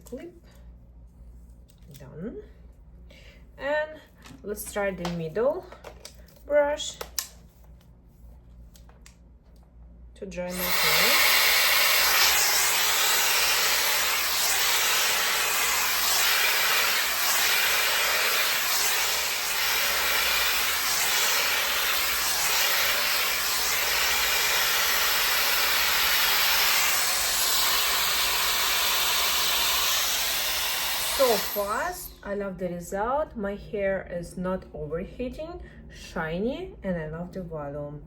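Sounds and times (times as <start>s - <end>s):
hair dryer brush blowing: 10.5s - 32.1s.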